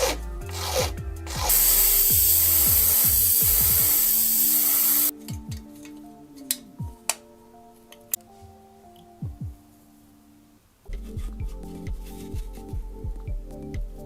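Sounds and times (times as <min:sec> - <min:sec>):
small motor humming: 0:00.0 - 0:05.1
loud steady hiss: 0:01.4 - 0:05.1.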